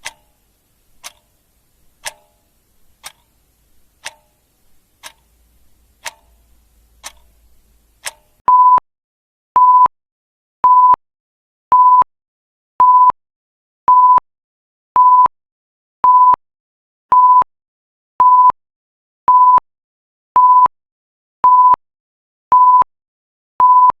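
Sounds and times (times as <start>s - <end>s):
timer alarm beeps: 8.5s - 8.8s, 17.1s - 17.5s, 21.4s - 21.8s, 22.5s - 22.9s, 23.6s - 24.0s.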